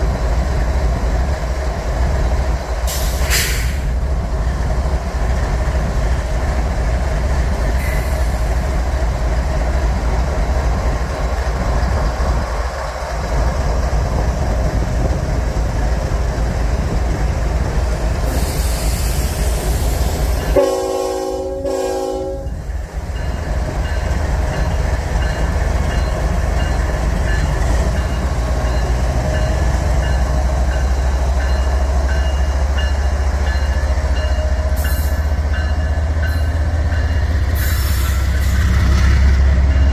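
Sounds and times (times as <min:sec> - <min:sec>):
diesel train rumbling: 0:00.0 - 0:39.9
air hiss: 0:02.9 - 0:04.0, 0:18.3 - 0:20.4
train horn blast: 0:20.5 - 0:22.6.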